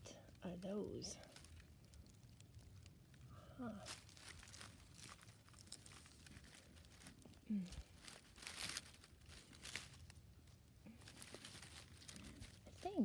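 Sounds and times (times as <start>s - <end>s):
dry leaves crackling: 0.0s - 13.0s
person murmuring: 7.5s - 7.8s.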